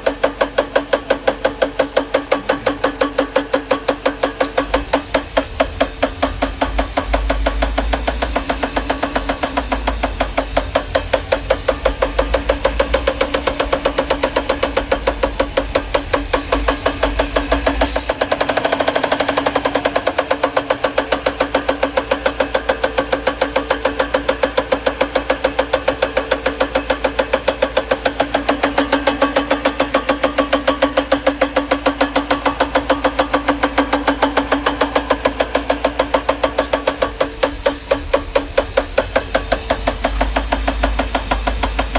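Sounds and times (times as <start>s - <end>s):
fast even engine knocking: 0.0s - 41.9s
car engine idling: 3.9s - 22.9s, 30.7s - 41.9s.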